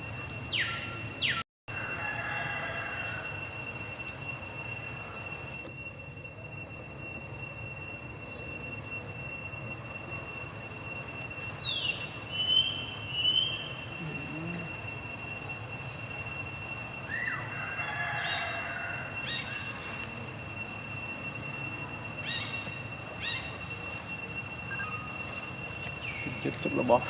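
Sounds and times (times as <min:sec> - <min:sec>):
steady high-pitched whine: 0:00.0 - 0:27.0
high-pitched animal calls: 0:11.4 - 0:15.0.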